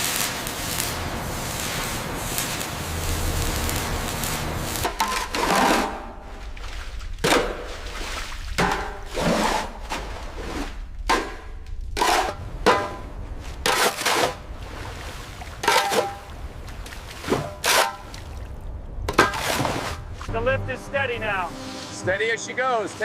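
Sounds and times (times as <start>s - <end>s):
low rumble: 0.2s - 17.2s, 18.0s - 21.6s.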